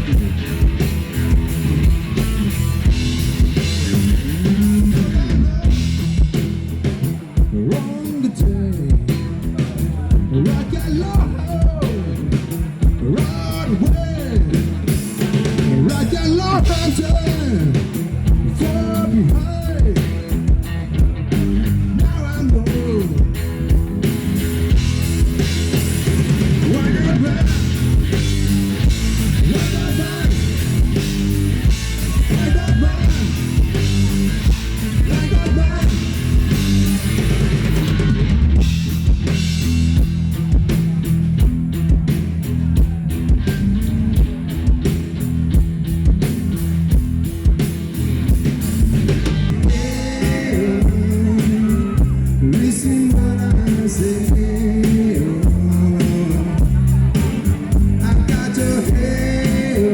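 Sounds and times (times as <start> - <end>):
rock band playing: 0.0 - 59.9.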